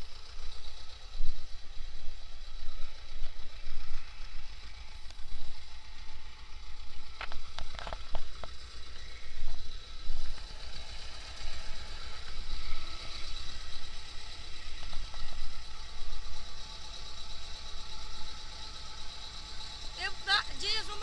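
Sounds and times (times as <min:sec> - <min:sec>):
tractor diesel engine running: 0:00.0 - 0:21.0
sharp clicks and clatter: 0:07.1 - 0:11.5.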